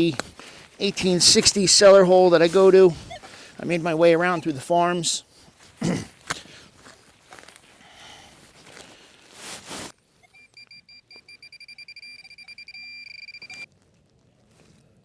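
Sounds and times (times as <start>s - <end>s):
rustling and scraping: 8.4s - 10.0s
metal detector beeping: 10.2s - 13.7s.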